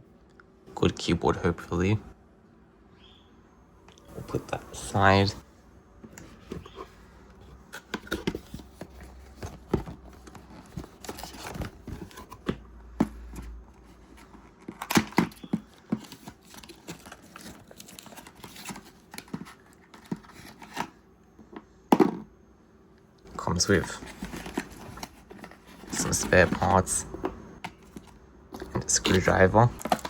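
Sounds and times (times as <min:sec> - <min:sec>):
packaging rustling: 0:07.5 - 0:12.6, 0:13.2 - 0:21.0, 0:23.4 - 0:26.9, 0:27.6 - 0:30.0
packaging clicks and knocks: 0:07.7 - 0:22.3, 0:24.1 - 0:30.0.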